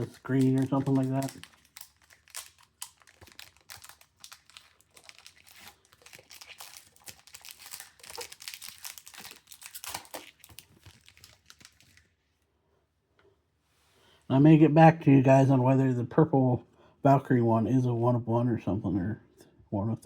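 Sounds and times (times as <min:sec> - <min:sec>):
trading cards rustling: 0:00.0 - 0:12.2.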